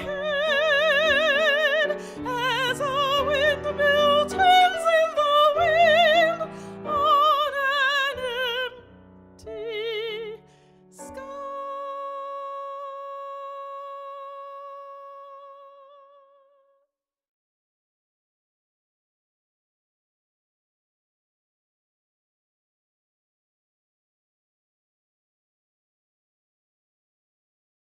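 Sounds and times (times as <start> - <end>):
piano accompaniment: 0.0 - 15.6
operatic soprano singing: 0.0 - 16.7.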